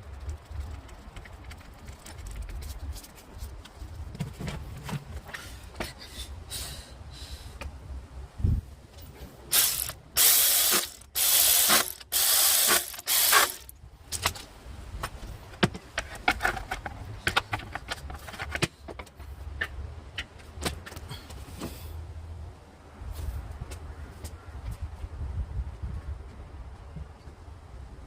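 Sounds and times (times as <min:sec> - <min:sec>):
ratchet wrench clicking: 0:09.5 - 0:13.7.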